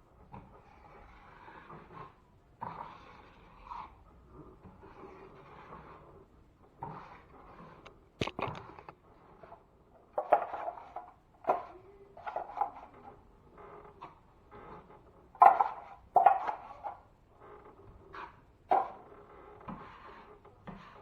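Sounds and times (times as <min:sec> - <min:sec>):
hand tools scraping drywall: 0:15.6 - 0:21.0.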